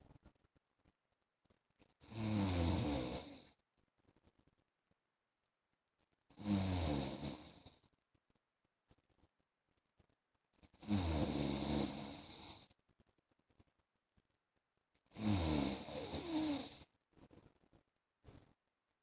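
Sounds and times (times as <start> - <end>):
man snoring: 2.1 - 3.5, 6.4 - 7.7, 10.8 - 12.6, 15.2 - 16.8.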